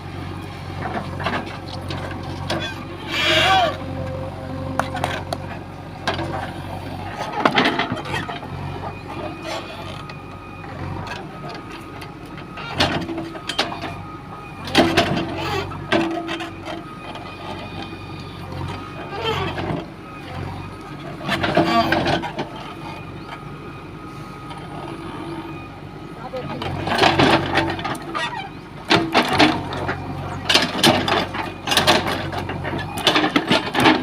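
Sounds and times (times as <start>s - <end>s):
diesel engine running: 0.0s - 34.0s
short whines: 2.4s - 10.6s
metallic clanks and knocks: 7.2s - 8.4s, 11.0s - 14.0s, 26.7s - 34.0s.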